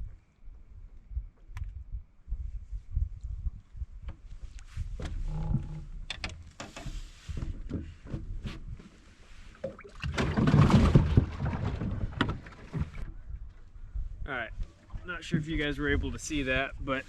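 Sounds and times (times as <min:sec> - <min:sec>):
knocks and clatter of handling: 0:06.1 - 0:09.0, 0:09.6 - 0:13.3.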